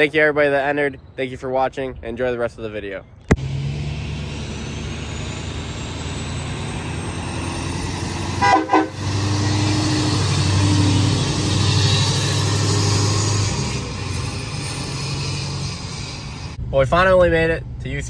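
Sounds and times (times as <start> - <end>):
road noise: 0.0 - 18.0
vehicle engine drone: 3.2 - 18.0
car horn honking: 8.4 - 9.2.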